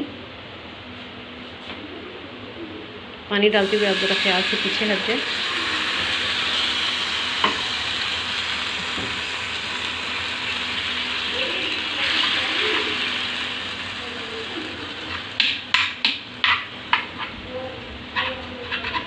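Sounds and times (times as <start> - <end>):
sizzling hiss in a hot pan: 3.6 - 17.1.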